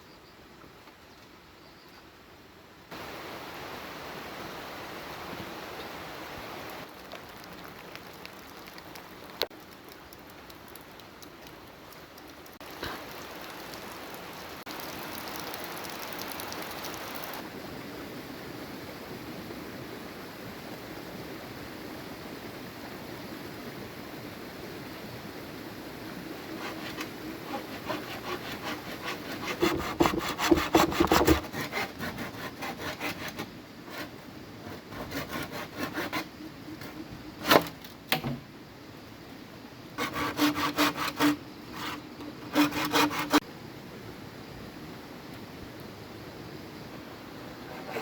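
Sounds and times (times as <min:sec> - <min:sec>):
saw cutting bamboo: 0:26.6 - 0:37.8, 0:40.0 - 0:43.4.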